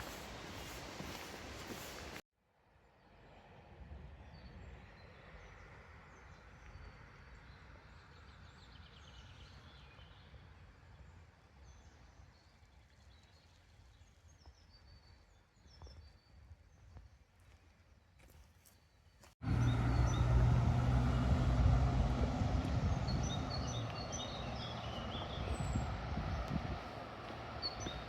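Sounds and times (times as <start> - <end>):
small birds chirping: 18.6 - 28.0
low steady rumble: 19.4 - 27.2.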